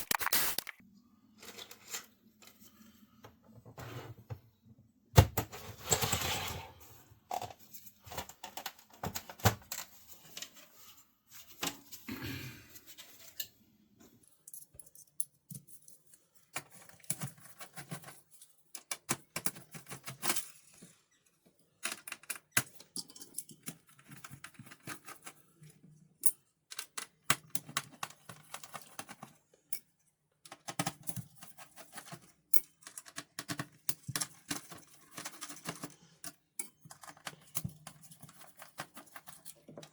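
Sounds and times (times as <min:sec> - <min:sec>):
plastic keyboard clicks and rattles: 0:00.0 - 0:00.8, 0:07.3 - 0:10.0, 0:16.6 - 0:20.6, 0:21.8 - 0:22.9, 0:23.5 - 0:25.5, 0:26.7 - 0:29.8, 0:30.5 - 0:39.9.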